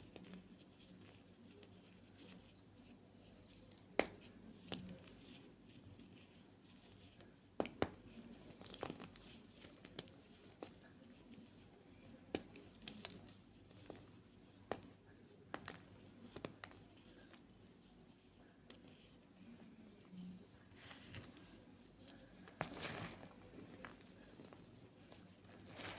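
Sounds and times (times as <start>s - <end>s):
chalk crumbling: 0.0s - 25.9s.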